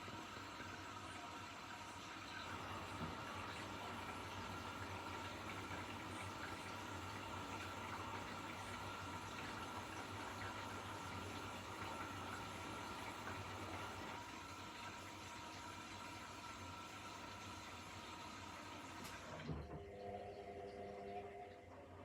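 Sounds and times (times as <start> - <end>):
washing machine spin cycle hum: 0.0 - 22.0.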